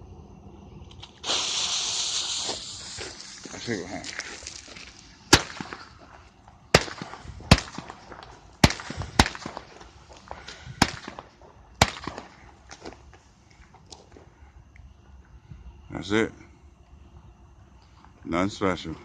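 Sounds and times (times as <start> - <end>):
firework launch pops: 0.9 - 13.2
firework crackle: 0.9 - 13.3.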